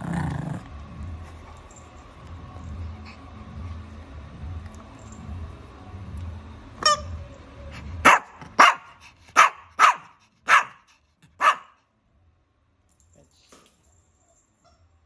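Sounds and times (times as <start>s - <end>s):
dog yipping: 6.8s - 7.2s, 8.1s - 10.8s, 11.4s - 11.8s.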